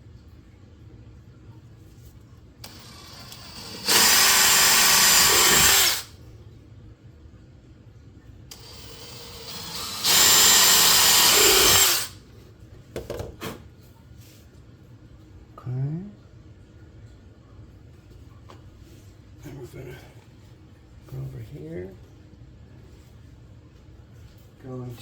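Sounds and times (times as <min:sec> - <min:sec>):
power drill boring into wood: 0:02.6 - 0:06.1, 0:08.5 - 0:12.2.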